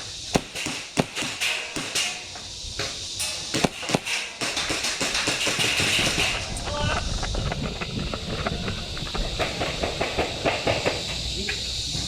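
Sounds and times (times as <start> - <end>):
airsoft gun pops: 0.3 - 2.2, 3.5 - 6.4.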